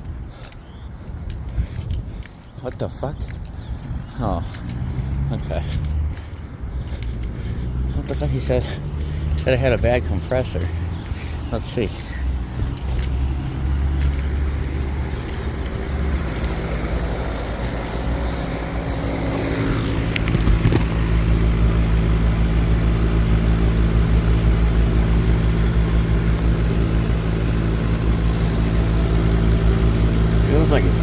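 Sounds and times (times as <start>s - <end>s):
low pulsing rumble: 3.2s - 31.0s
air conditioner electrical hum: 9.6s - 31.0s.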